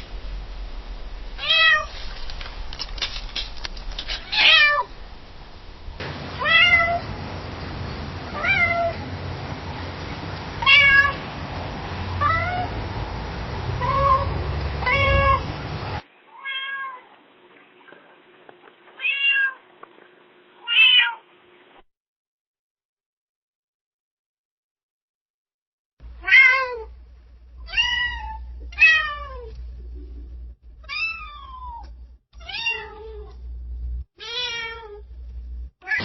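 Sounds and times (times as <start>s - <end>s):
low hum: 0.0s - 16.0s, 26.0s - 34.1s, 34.9s - 35.8s
cat meowing: 1.4s - 1.9s, 4.2s - 4.9s, 6.4s - 7.0s, 8.3s - 9.0s, 10.6s - 11.2s, 12.2s - 12.7s, 13.8s - 15.5s, 16.3s - 17.1s, 19.0s - 19.6s, 20.6s - 21.2s, 26.2s - 26.9s, 27.6s - 29.5s, 30.8s - 33.4s, 34.2s - 35.0s.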